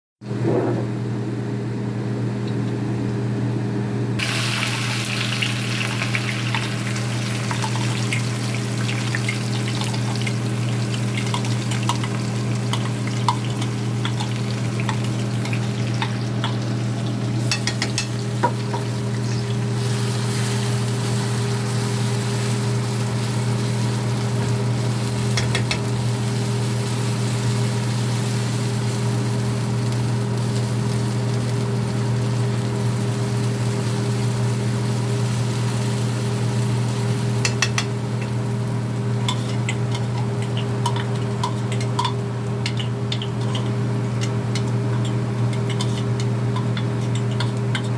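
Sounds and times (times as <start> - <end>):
steady low hum: 0.2 - 4.3
food sizzling in a pan: 4.2 - 47.9.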